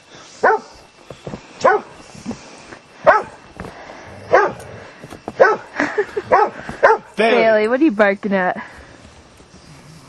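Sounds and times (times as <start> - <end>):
dog barking: 0.4 - 0.7, 1.6 - 1.9, 3.0 - 3.4, 4.3 - 4.6, 5.4 - 5.7, 6.3 - 7.1.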